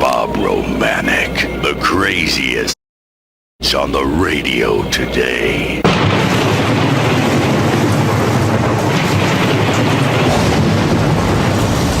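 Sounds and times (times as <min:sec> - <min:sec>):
rolling thunder: 0:05.8 - 0:12.0
rain: 0:05.9 - 0:12.0.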